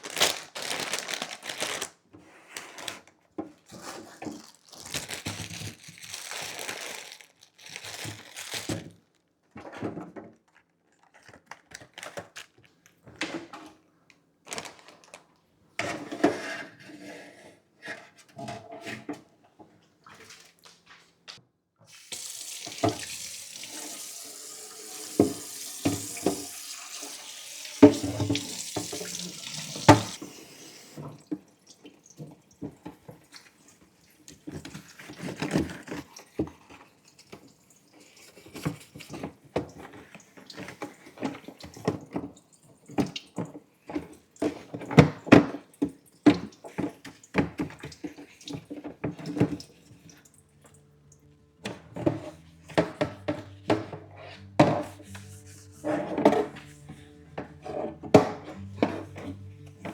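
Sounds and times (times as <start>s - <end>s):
clatter of things under water: 9.5s - 12.4s, 38.4s - 50.2s
tap running into sink: 21.9s - 33.2s.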